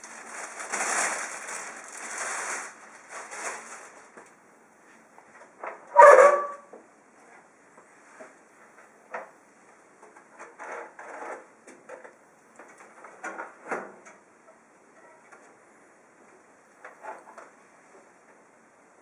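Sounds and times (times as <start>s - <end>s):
packaging scraping and rustling: 0.0s - 4.2s.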